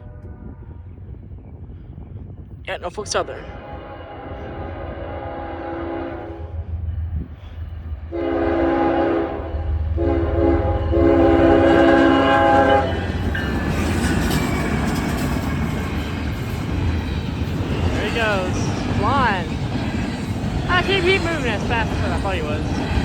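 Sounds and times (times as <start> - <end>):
train passing rush: 0.0 - 23.0
locomotive air horn blasts: 3.4 - 6.6, 8.1 - 13.0
train wheel clatter: 12.4 - 23.0.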